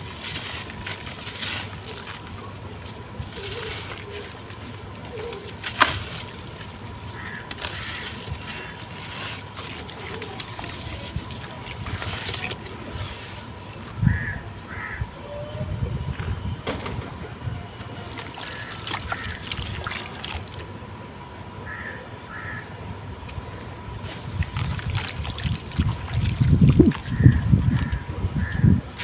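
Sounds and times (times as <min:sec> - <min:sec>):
water splashing: 0:00.0 - 0:14.0, 0:16.7 - 0:20.7, 0:24.0 - 0:28.1
bird crying: 0:07.2 - 0:08.8, 0:14.0 - 0:15.8, 0:21.6 - 0:22.7.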